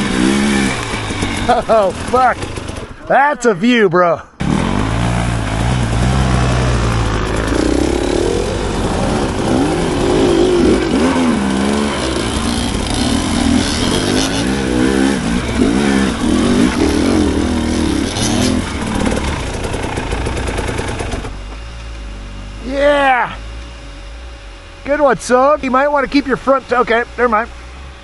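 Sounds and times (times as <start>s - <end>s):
dirt bike engine revving: 0.0s - 3.1s, 4.4s - 28.0s
steady rushing noise: 4.4s - 21.5s.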